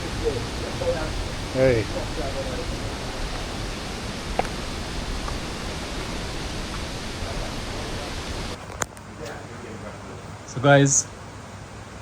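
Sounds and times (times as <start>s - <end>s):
waterfall rushing: 0.0s - 8.6s.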